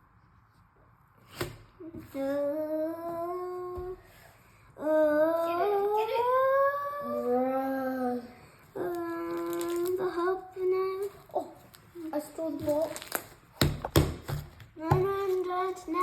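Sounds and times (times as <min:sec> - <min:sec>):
girl humming: 0:04.8 - 0:11.1.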